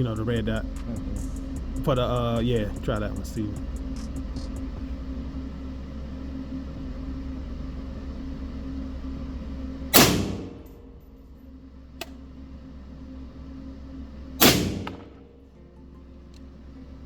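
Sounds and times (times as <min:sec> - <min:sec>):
steady low hum: 0:00.0 - 0:17.0
rifle shots: 0:09.9 - 0:10.9, 0:14.4 - 0:15.3
small click: 0:12.0 - 0:12.2.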